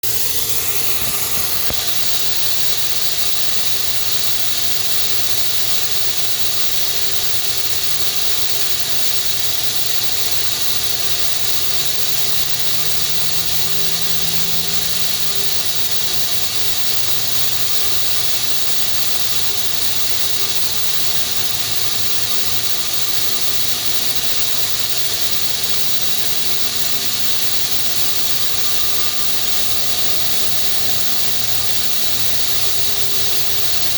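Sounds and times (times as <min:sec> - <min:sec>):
high-pitched whine: 0:00.0 - 0:33.9
machine spindle whirring: 0:00.0 - 0:33.9.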